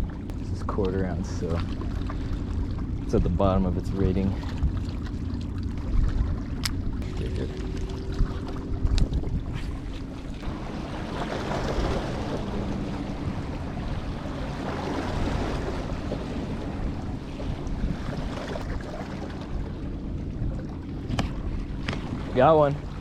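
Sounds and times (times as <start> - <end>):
low hum: 0.0 - 23.0
wind noise on microphone: 5.8 - 19.0.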